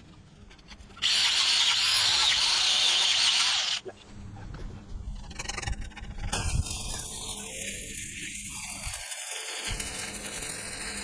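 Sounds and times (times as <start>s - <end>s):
power tool hissing: 1.0s - 3.8s.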